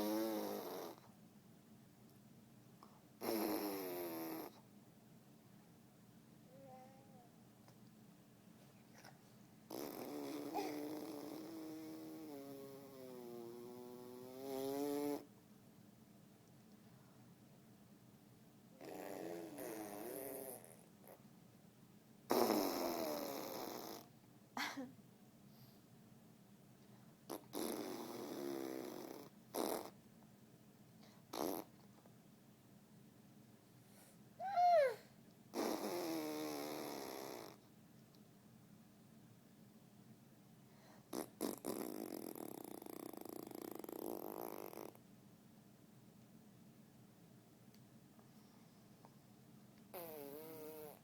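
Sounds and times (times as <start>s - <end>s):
raspy nose and throat noises: 3.2s - 4.6s, 9.0s - 15.3s, 22.3s - 24.1s, 27.3s - 30.0s, 31.1s - 31.8s, 35.5s - 37.6s, 41.0s - 45.0s, 49.9s - 51.0s
buzzing vocal noise: 9.7s - 15.3s.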